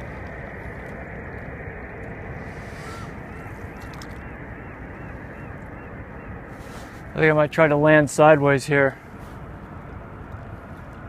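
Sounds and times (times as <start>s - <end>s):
water washing: 0.0s - 5.5s
wind noise: 0.0s - 11.0s.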